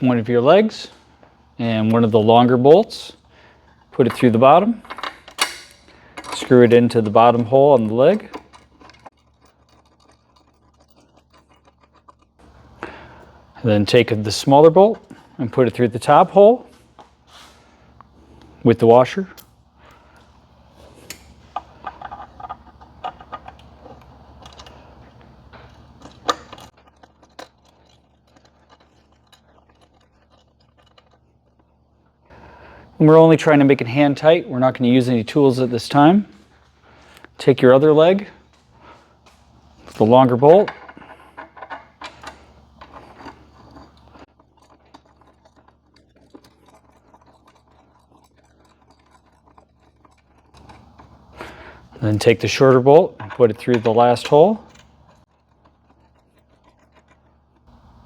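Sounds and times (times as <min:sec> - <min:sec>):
small clicks and scrapes of bolt: 0:03.5 - 0:13.3, 0:19.3 - 0:32.4, 0:39.2 - 0:52.4, 0:53.2 - 0:58.0
metal bolt clicking and clinking: 0:03.7 - 0:12.3.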